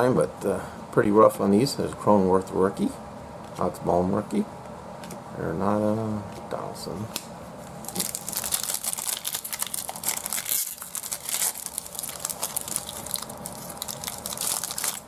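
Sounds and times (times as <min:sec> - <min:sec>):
foil wrapper crinkling and tearing: 0:07.8 - 0:15.0.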